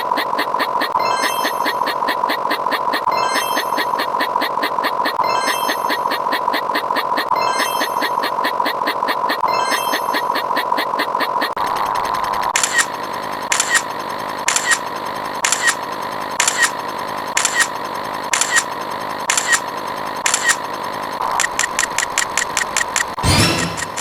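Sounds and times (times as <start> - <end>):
sharp clicks: 12.5 - 17.7, 18.3 - 20.6, 21.3 - 24.0
loud noisy burst: 23.2 - 24.0.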